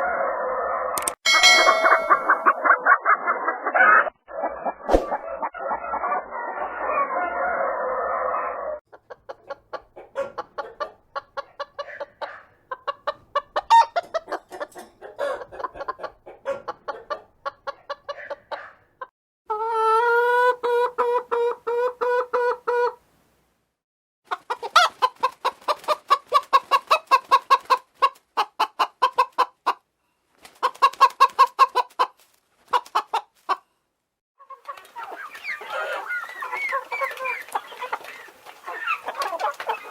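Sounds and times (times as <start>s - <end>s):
chicken drawn-out call: 0.0s - 8.8s, 13.6s - 18.8s, 34.4s - 39.9s
chickens clucking: 1.5s - 23.0s, 24.3s - 33.7s, 34.4s - 39.9s.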